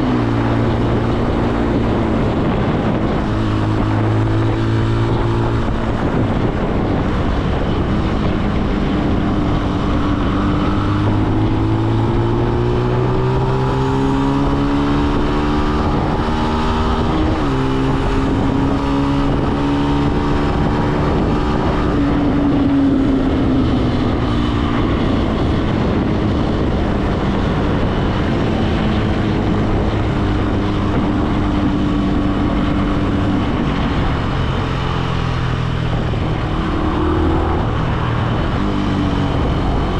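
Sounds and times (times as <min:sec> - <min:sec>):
motorcycle engine running: 0:00.0 - 0:39.9
wind noise on microphone: 0:00.0 - 0:39.9.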